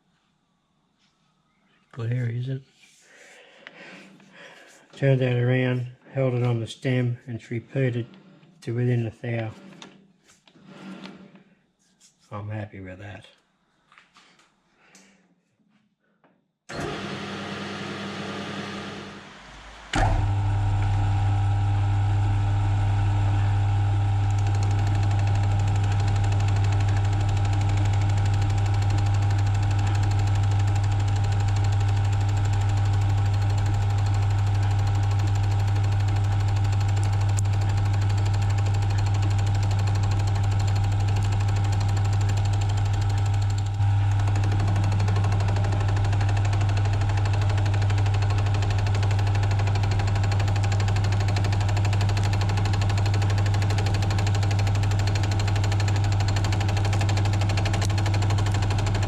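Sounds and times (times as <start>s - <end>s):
lathe motor hum: 16.7s - 59.0s
quieter machine sound: 18.2s - 59.0s.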